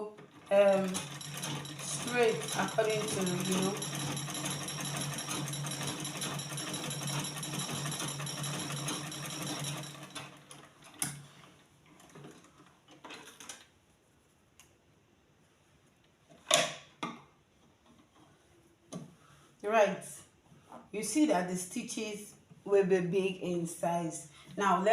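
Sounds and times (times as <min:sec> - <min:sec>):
sewing machine running: 0:00.2 - 0:10.8.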